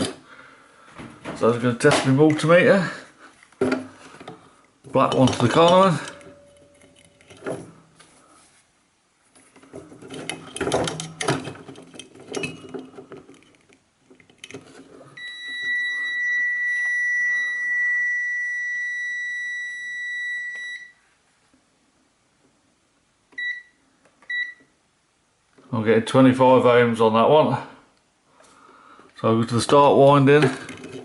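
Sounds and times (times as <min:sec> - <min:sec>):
test leads clattering: 0:04.9 - 0:07.7
multimeter continuity beep: 0:15.2 - 0:21.0.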